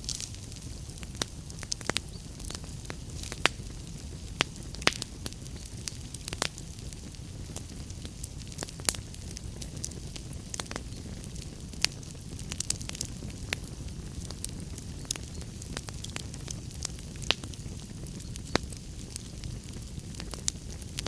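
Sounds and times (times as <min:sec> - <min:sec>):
fire crackling and popping: 0:00.0 - 0:21.0
fire flames rumbling: 0:00.0 - 0:21.0.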